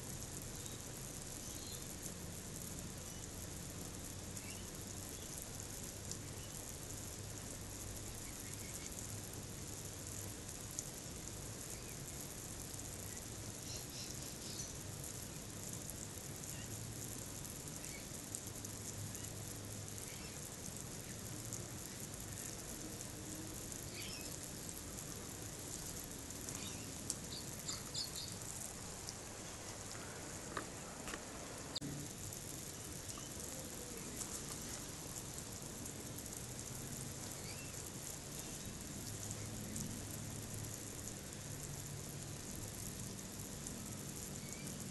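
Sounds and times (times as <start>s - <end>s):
steady hiss: 0.0s - 44.9s.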